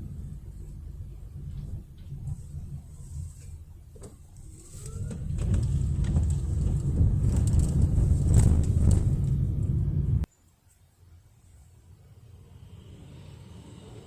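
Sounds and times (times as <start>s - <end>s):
train rumble: 0.0s - 10.3s.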